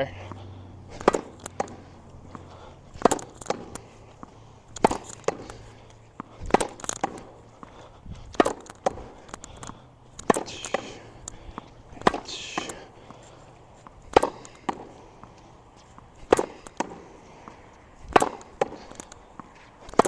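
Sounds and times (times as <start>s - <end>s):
racket striking ball: 0.3s - 20.0s
ball hitting wall: 0.9s - 3.9s, 4.7s - 5.6s, 6.2s - 7.3s, 8.3s - 9.4s, 10.2s - 11.0s, 12.0s - 12.8s, 14.1s - 14.9s, 16.2s - 17.1s, 18.1s - 19.1s.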